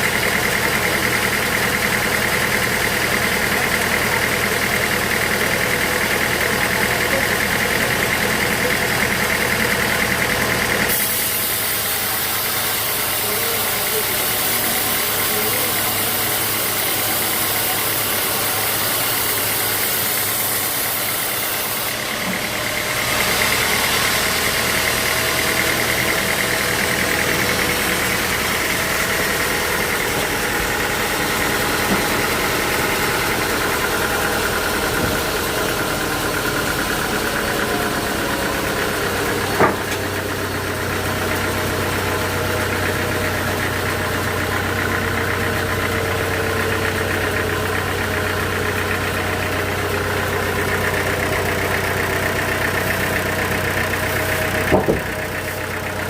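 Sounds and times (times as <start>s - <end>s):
machinery engine running: 0.0s - 56.0s
sharp knock: 54.7s - 55.2s.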